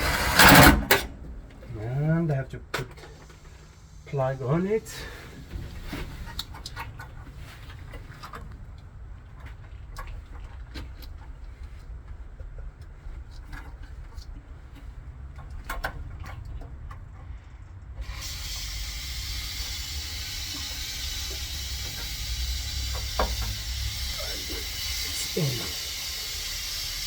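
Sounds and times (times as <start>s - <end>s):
steady hiss: 18.2s - 27.0s
steady low hum: 18.9s - 27.0s.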